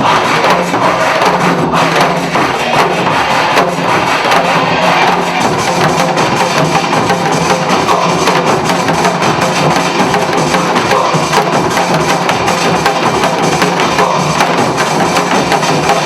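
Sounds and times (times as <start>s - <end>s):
drums struck in rhythm: 0.0s - 16.0s
upbeat song: 0.0s - 16.0s.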